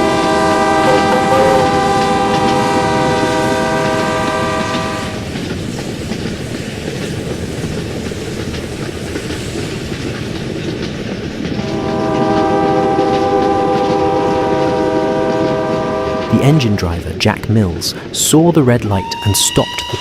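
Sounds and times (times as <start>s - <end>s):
train horn: 0.0s - 5.3s, 11.6s - 16.6s
train rumbling on rails: 0.0s - 20.0s.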